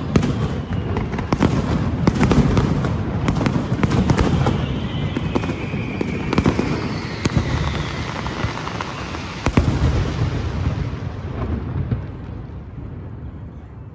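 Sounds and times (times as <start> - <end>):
sharp firework cracks: 0.0 - 11.6
low rumble of distant fireworks: 0.0 - 13.9
faint falling whistle: 0.2 - 1.3, 4.1 - 9.6.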